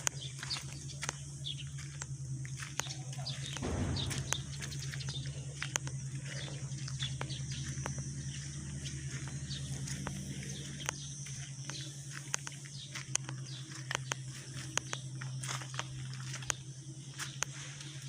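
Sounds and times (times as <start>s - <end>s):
birds chirping: 0.0s - 18.0s
excavator diesel engine running: 0.0s - 18.0s
short rumble: 3.4s - 7.8s
sharp clicks and knocks: 3.5s - 5.9s.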